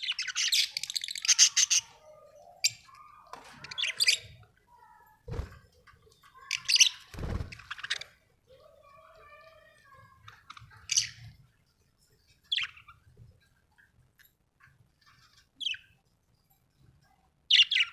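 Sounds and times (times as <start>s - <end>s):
budgerigars chirping and warbling: 0.0s - 4.4s, 17.5s - 17.9s.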